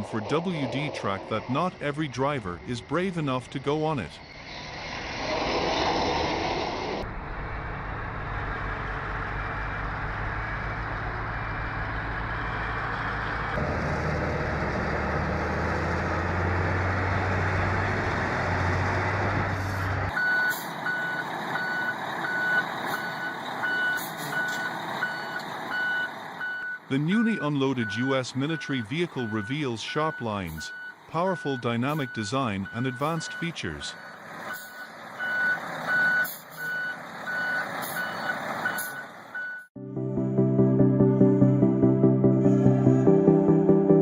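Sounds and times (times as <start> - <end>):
heavy vehicle engine running: 0.0 - 44.0
reversing alarm beeping: 20.1 - 39.7.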